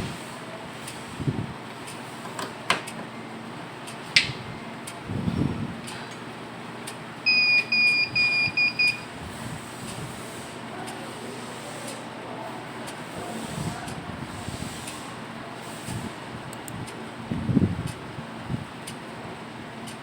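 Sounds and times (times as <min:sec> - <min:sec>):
high buzzer beeps: 0:07.2 - 0:09.2.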